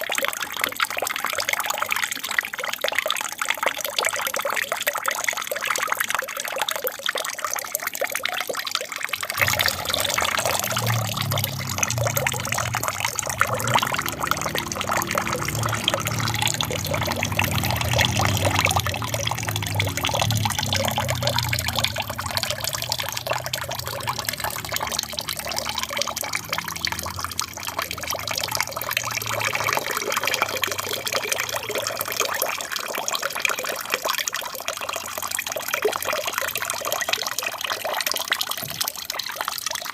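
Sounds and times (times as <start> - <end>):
water trickling and splashing: 0.0 - 39.9
low rumble: 9.4 - 26.4.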